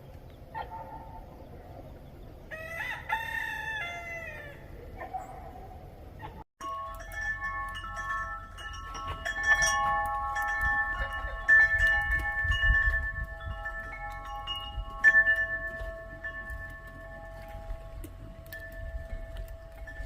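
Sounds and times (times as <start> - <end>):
wind chimes ringing: 6.6 - 20.0.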